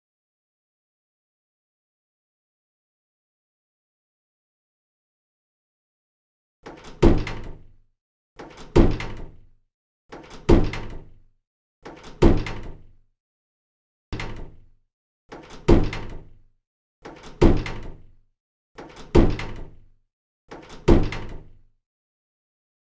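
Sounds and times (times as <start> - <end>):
door shutting: 6.6 - 7.7, 8.4 - 9.4, 10.1 - 11.1, 11.8 - 12.9, 14.2 - 14.6, 15.3 - 16.4, 17.0 - 18.1, 18.8 - 19.8, 20.5 - 21.6.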